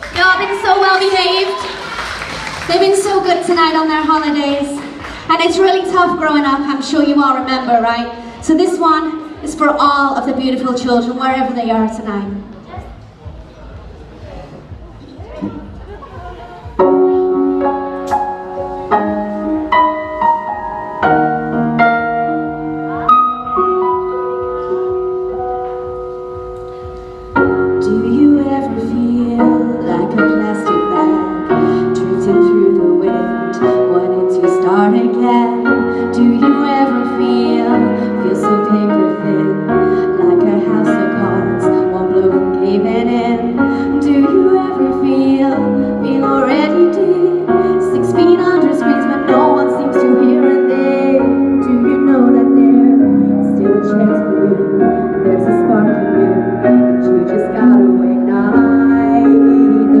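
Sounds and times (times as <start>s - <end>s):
piano backing track: 0.0s - 60.0s
woman singing a slow pop song: 27.6s - 60.0s.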